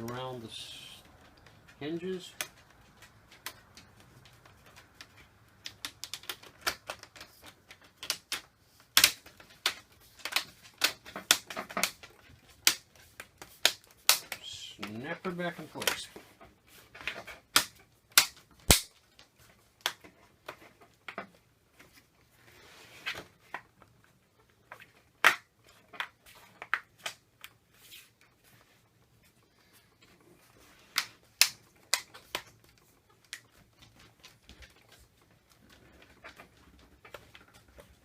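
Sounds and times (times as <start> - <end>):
plastic clips snapping into place: 5.6 - 12.8.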